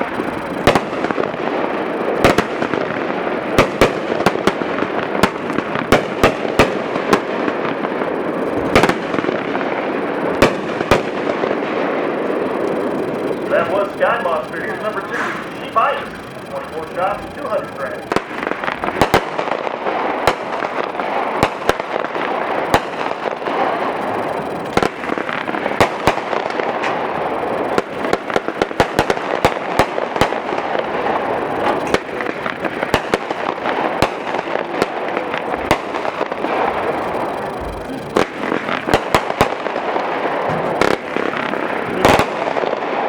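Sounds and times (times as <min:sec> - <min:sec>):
crackling firework bursts: 0:00.0 - 0:43.0
firework shots firing: 0:00.0 - 0:43.0.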